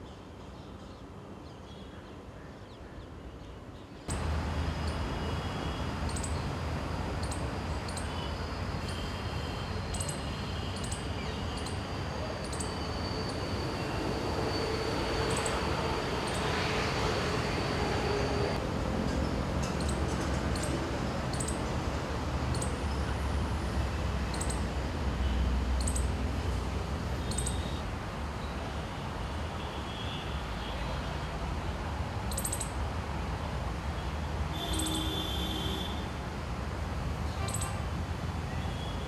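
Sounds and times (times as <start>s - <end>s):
low rumble of traffic: 0.0s - 39.0s.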